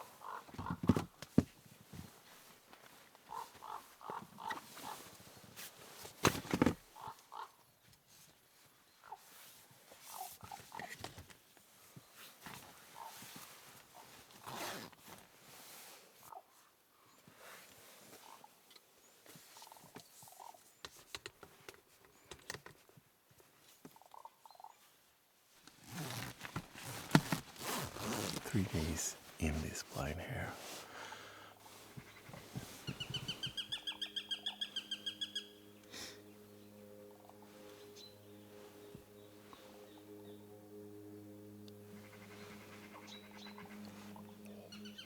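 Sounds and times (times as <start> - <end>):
rasping bird calls: 31.7 - 35.8
soft bird calls: 31.7 - 40.6, 42.0 - 45.0.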